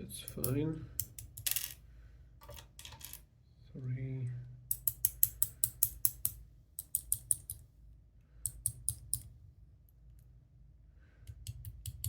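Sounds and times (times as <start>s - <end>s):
metallic clicks of lock parts: 0.3s - 1.8s, 4.7s - 7.6s.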